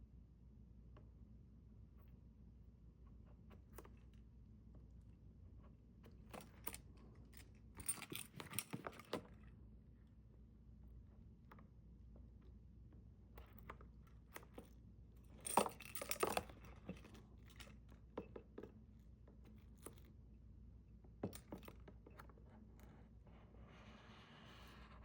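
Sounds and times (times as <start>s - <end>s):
small clicks and rustles: 11.4s - 20.3s.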